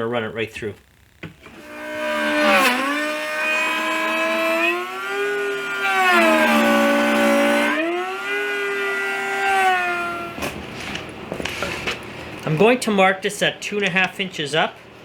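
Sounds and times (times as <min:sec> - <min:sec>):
router motor whine: 0:00.8 - 0:10.5.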